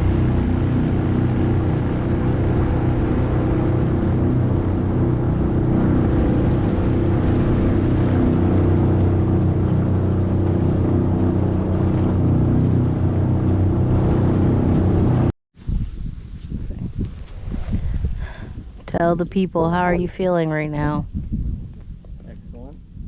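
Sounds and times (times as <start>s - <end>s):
outboard motor running: 0.0s - 15.3s.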